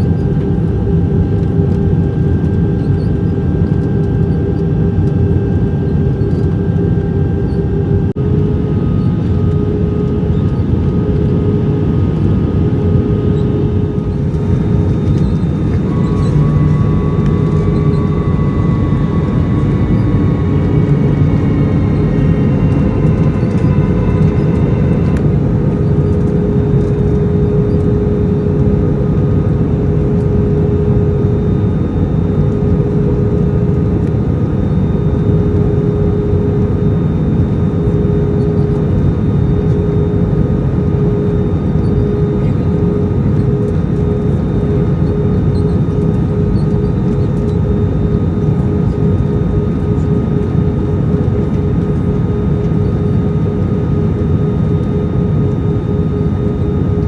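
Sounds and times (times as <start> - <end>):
high whining tones: 0.0 - 53.2
constant hum: 0.0 - 57.0
jet engine and airflow noise: 0.0 - 57.0.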